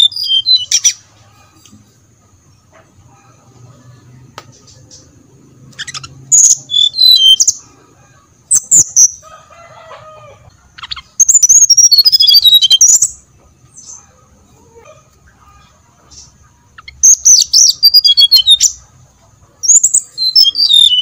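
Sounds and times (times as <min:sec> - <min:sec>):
bird singing whistled phrases: 0:00.0 - 0:01.0, 0:05.8 - 0:07.6, 0:11.2 - 0:13.2, 0:16.8 - 0:18.7, 0:19.7 - 0:21.0.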